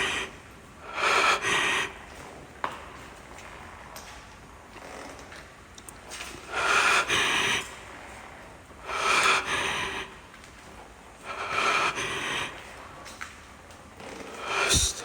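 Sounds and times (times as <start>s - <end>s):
person breathing heavily: 0.0s - 2.0s, 8.9s - 10.2s, 11.3s - 12.6s, 14.4s - 15.0s.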